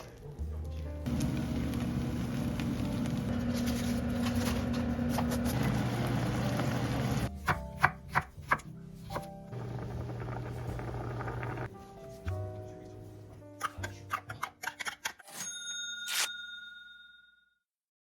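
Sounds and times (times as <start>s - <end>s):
knife chopping on cutting board: 7.4s - 9.3s.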